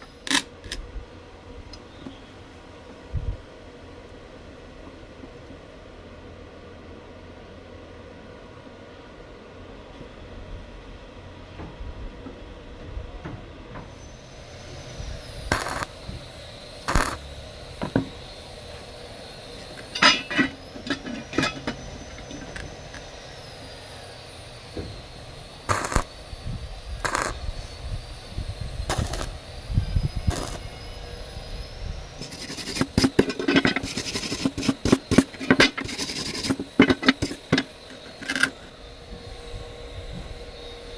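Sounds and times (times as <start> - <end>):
metal clanks and clinks: 19.8 - 23.0, 32.2 - 38.7.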